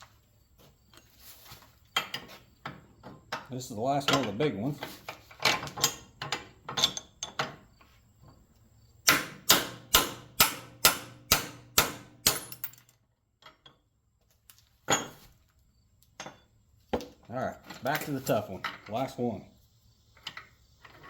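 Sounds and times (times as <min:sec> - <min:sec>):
hammer striking metal punch: 0:09.1 - 0:12.7.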